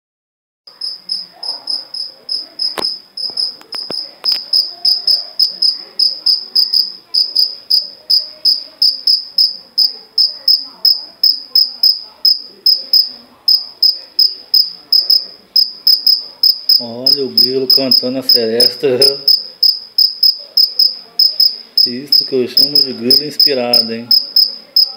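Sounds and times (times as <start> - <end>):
cricket chirping: 0.7 - 24.9.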